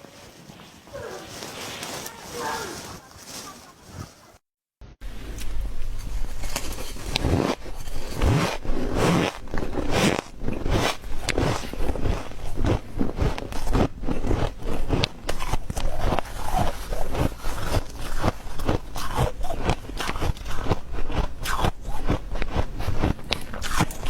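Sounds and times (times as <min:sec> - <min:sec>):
crunching ice chewing: 0:06.4 - 0:24.0.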